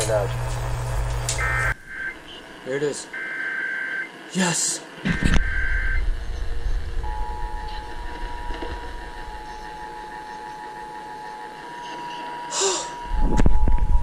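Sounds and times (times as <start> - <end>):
two-tone alert alarm: 1.4 - 2.4, 5.2 - 6.1, 7.0 - 13.9
low rumble with knocks: 5.1 - 10.7.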